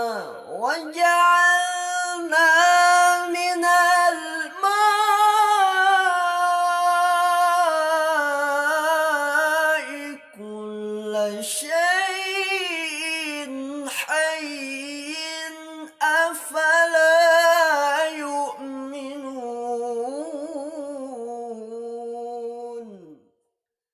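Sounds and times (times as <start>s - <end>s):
person reciting melodically: 0.0s - 23.2s.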